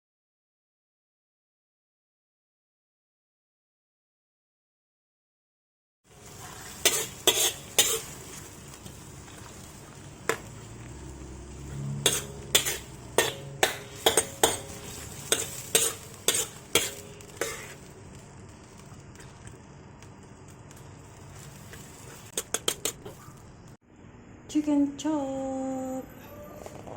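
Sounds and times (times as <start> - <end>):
food sizzling in frying pan: 6.1 - 23.8.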